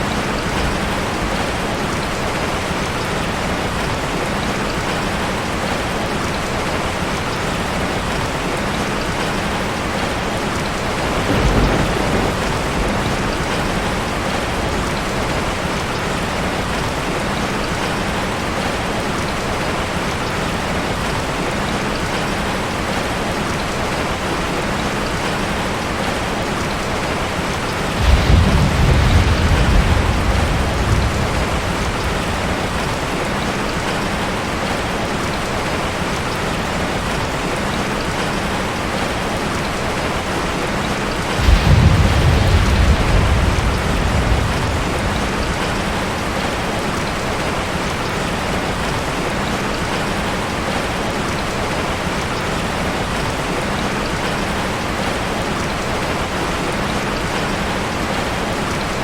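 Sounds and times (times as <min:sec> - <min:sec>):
rain falling on street: 0:00.0 - 0:59.0
low rumble: 0:28.0 - 0:33.0, 0:41.4 - 0:46.7.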